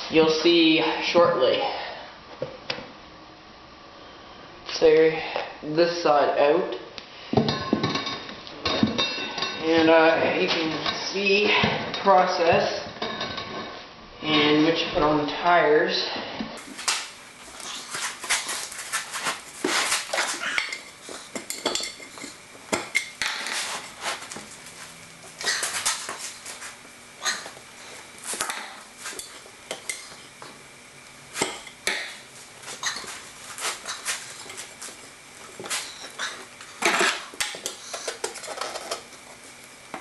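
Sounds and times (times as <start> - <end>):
metal tools clanking on wheel rim: 17.6 - 24.8, 28.3 - 30.5.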